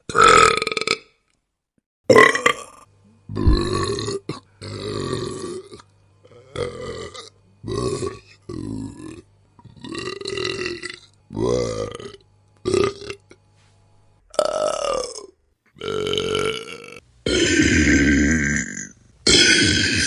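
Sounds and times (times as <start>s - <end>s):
person burping: 0.1s - 1.1s, 2.1s - 5.7s, 14.3s - 20.0s.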